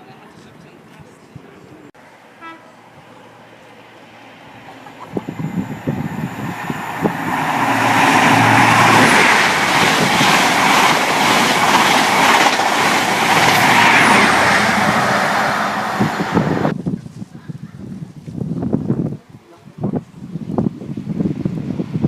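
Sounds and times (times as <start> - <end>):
train rushing past: 2.0 - 16.7
wheels clicking over rail joints: 8.4 - 14.3.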